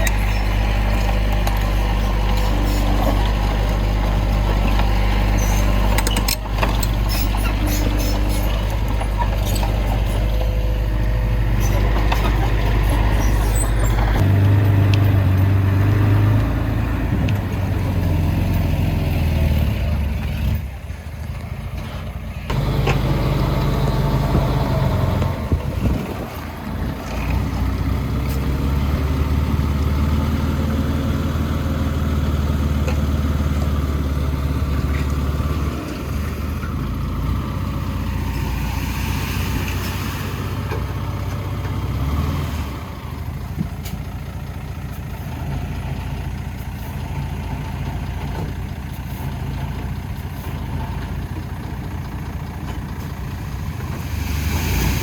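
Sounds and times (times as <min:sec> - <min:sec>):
heavy diesel engines running: 0:00.0 - 0:55.0.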